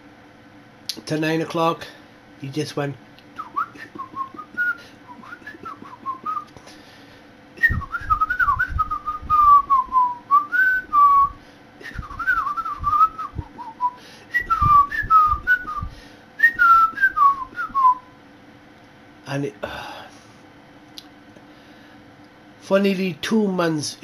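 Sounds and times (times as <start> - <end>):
bird-like whistling: 3.4 - 6.5, 7.6 - 18.1
wind rumble on microphone: 7.6 - 9.9, 11.9 - 13.7, 14.4 - 16.0.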